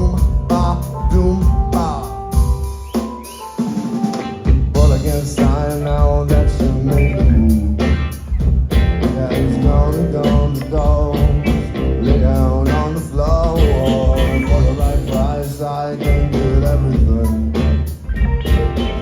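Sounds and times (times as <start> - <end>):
heavy bass line: 0.0 - 2.8, 4.4 - 19.0
drum kit beat: 0.0 - 19.0
bending melodic line: 16.2 - 19.0.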